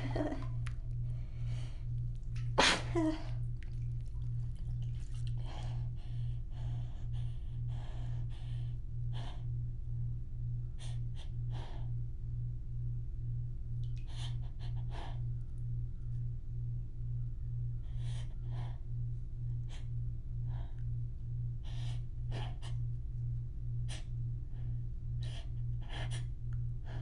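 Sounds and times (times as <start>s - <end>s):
low pulsing hum: 0.0s - 27.0s
person sneezing: 2.6s - 3.2s.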